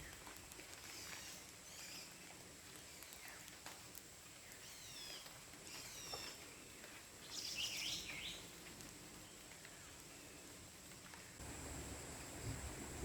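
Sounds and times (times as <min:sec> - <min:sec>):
background hiss: 0:00.0 - 0:13.0
bird chirps: 0:00.9 - 0:02.2, 0:04.4 - 0:06.4, 0:07.2 - 0:08.5.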